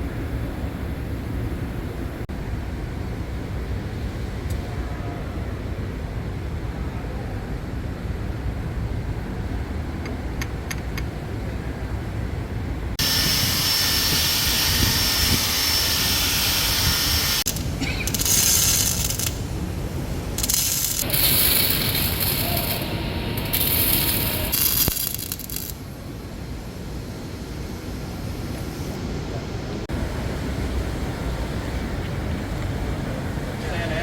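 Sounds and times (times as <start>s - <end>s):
steady low rumble: 0.0s - 34.0s
loud hiss bursts: 13.0s - 26.0s.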